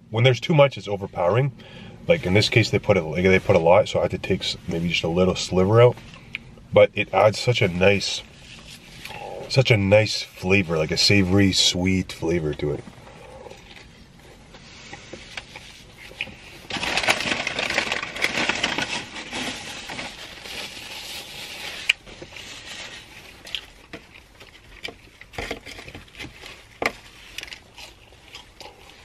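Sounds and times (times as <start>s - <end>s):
wrapper crinkling and crunching: 15.4s - 29.0s
chewing with mouth clicks: 27.4s - 29.0s.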